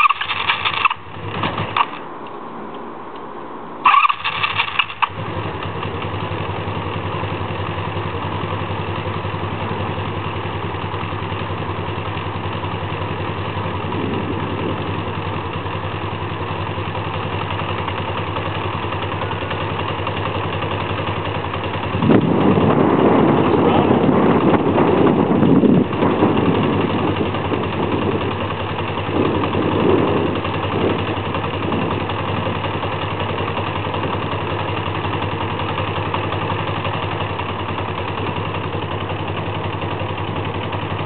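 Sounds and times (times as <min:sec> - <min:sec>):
engine cranking on starter: 0:00.0 - 0:02.1, 0:03.8 - 0:06.3
motorcycle engine running: 0:00.0 - 0:02.1, 0:03.8 - 0:41.0.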